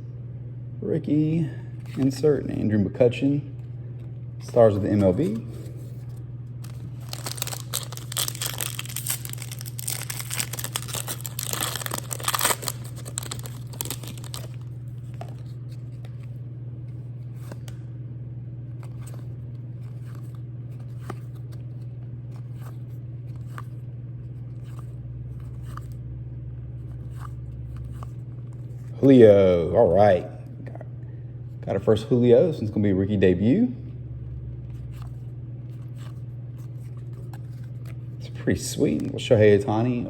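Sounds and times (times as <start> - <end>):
steady low hum: 0.0 - 40.0
wrapper tearing and crinkling: 6.6 - 14.7.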